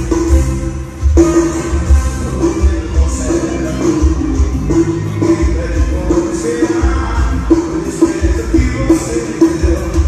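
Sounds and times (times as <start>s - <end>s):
music with pounding bass beat: 0.0s - 10.0s.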